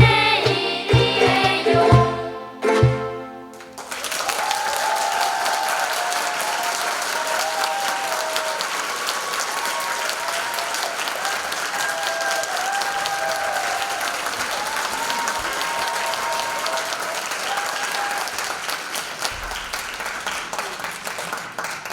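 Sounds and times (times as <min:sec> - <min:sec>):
ukulele chord: 0:00.0 - 0:03.8
audience applause: 0:03.5 - 0:21.9.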